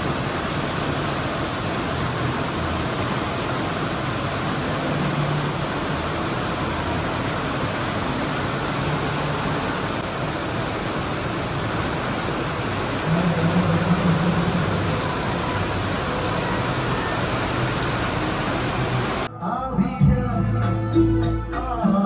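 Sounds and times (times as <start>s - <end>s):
steady hiss: 0.0s - 19.3s.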